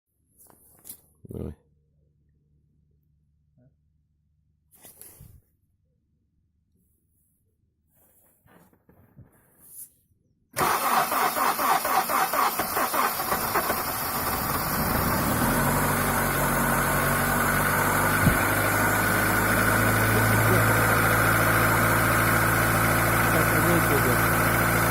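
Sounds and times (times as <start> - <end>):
car engine cranking and idling: 10.6 - 24.9.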